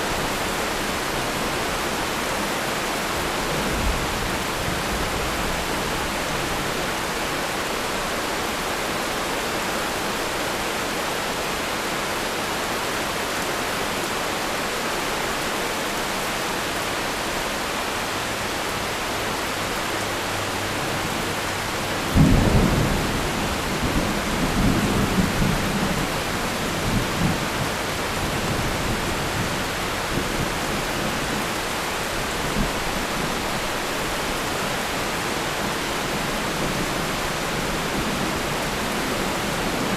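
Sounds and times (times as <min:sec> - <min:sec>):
heavy rain hissing: 0:00.0 - 0:39.9
thunderclap rumbling: 0:22.0 - 0:31.1.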